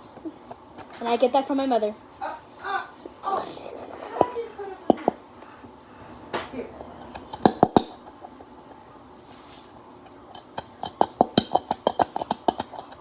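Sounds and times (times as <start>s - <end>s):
utensil clinking against mixing bowl: 6.8s - 8.6s, 10.0s - 13.0s.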